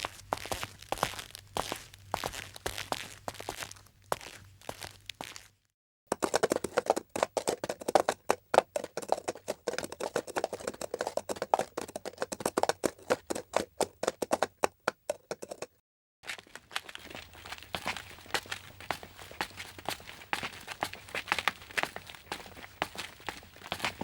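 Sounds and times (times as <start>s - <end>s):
rapid footsteps: 0.0s - 5.5s, 17.0s - 24.0s.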